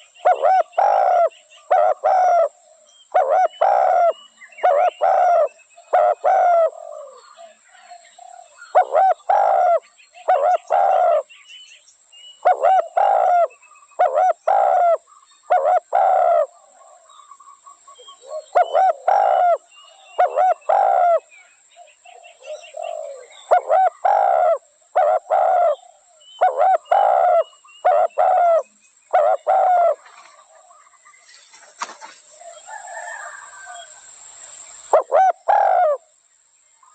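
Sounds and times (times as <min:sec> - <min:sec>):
dove cooing: 0:00.0 - 0:07.6, 0:08.2 - 0:11.3, 0:12.4 - 0:17.1, 0:18.0 - 0:21.3, 0:22.1 - 0:30.8, 0:34.9 - 0:36.1.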